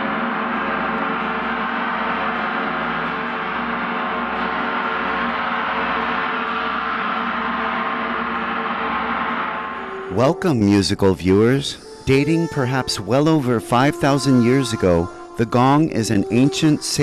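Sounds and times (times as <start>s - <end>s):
large gong sounding: 0.0s - 10.7s.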